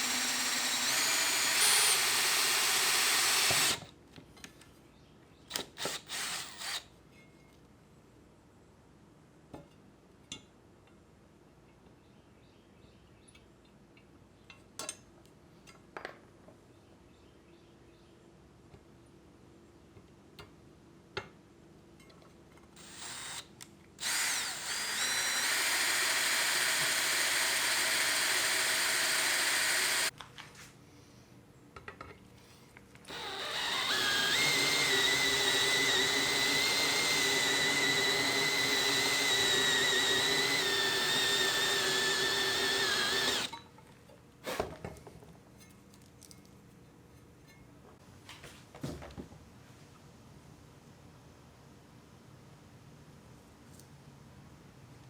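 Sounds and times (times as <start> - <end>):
electric power tool whining: 0.0 - 3.9, 5.5 - 6.8, 22.8 - 30.1, 33.1 - 43.6.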